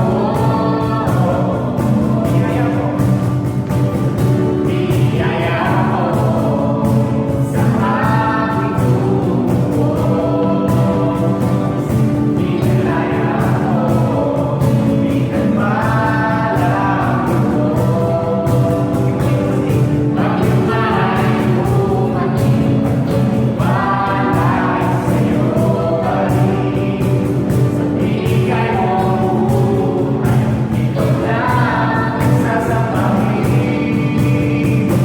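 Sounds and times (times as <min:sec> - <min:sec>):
band with a steady beat: 0:00.0 - 0:35.0
group of voices singing: 0:00.0 - 0:35.0.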